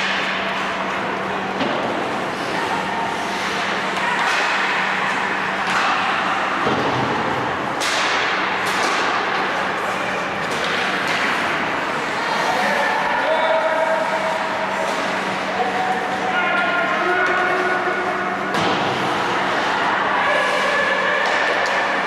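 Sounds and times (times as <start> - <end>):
hockey sticks and puck clacking: 0.0 - 22.0.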